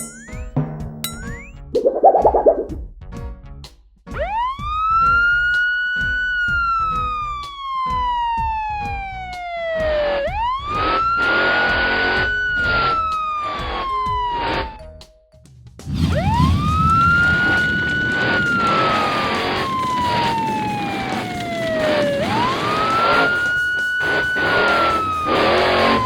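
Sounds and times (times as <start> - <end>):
background music with beat: 0.0 - 11.0
siren wailing: 1.8 - 2.8, 4.2 - 14.9, 15.9 - 26.0.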